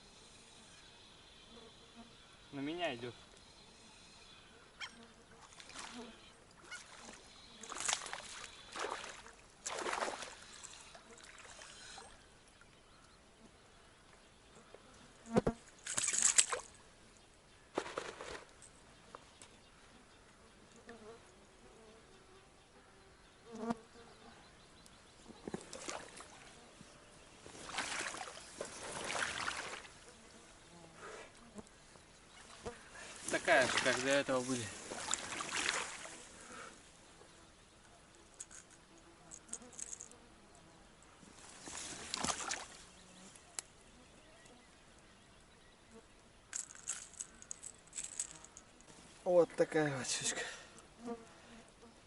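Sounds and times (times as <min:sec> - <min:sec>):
water splashing: 0:06.6 - 0:11.8, 0:27.5 - 0:30.0, 0:33.2 - 0:36.3, 0:41.7 - 0:42.8.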